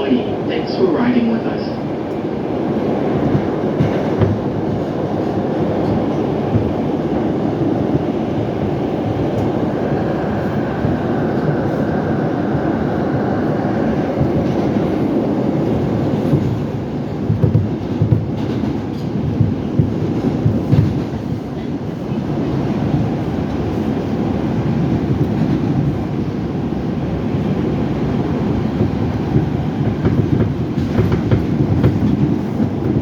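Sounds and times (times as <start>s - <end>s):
clacks over rail joints: 16.2s - 21.8s, 28.7s - 33.0s.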